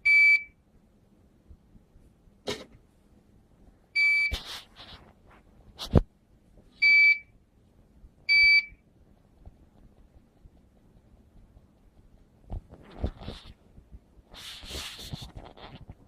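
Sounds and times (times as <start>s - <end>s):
soldering station buzzer beeps: 8.3s - 8.8s.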